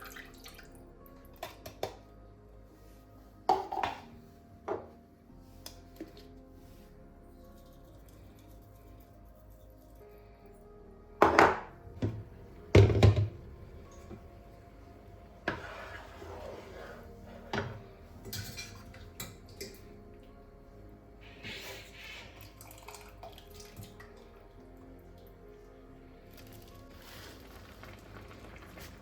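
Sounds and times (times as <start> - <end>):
soft background music: 0.0 - 29.0
loud knocks in kitchen: 11.2 - 13.4
kitchenware clinking: 15.5 - 19.8.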